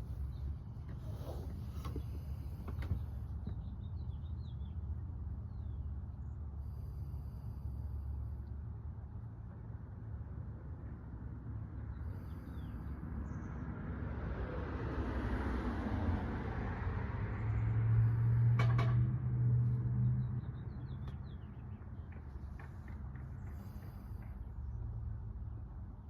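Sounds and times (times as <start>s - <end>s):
vehicle passing by: 11.3s - 26.0s.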